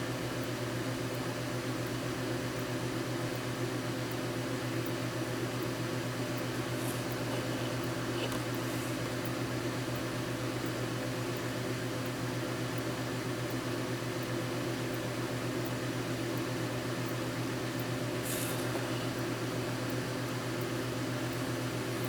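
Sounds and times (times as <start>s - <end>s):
electrical hum with fan whir: 0.0s - 22.0s
soft rustle: 6.5s - 9.2s.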